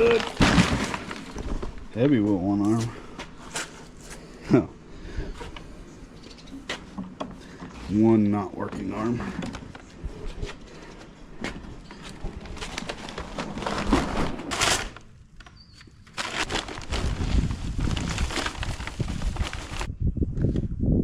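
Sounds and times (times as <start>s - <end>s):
paper bag rustling and clattering: 0.0s - 4.1s, 8.6s - 19.9s.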